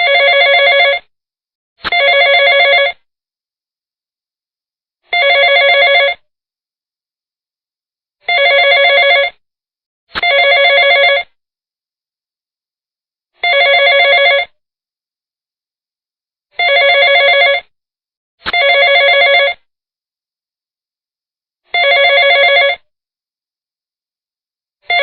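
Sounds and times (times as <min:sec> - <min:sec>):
telephone ringing warbling tone: 0:00.0 - 0:01.0, 0:01.9 - 0:03.0, 0:05.1 - 0:06.2, 0:08.3 - 0:09.4, 0:10.2 - 0:11.3, 0:13.4 - 0:14.5, 0:16.6 - 0:17.7, 0:18.5 - 0:19.6, 0:21.8 - 0:22.8.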